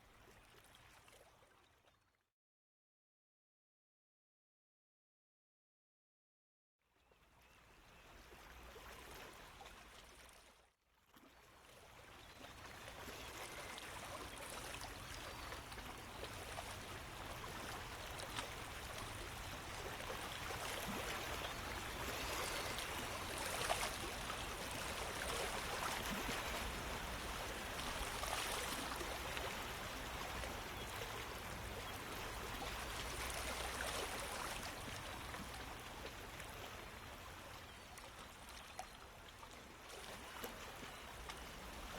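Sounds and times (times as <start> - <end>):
running water stream: 11.7 - 41.9.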